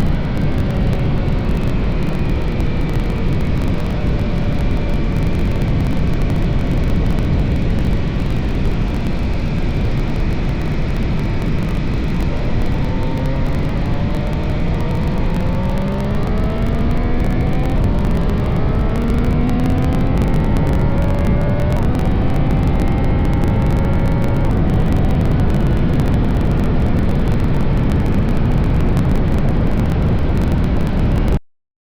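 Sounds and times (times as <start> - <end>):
loud steady low rush: 0.0 - 31.4
motorcycle engine revving: 11.4 - 26.8.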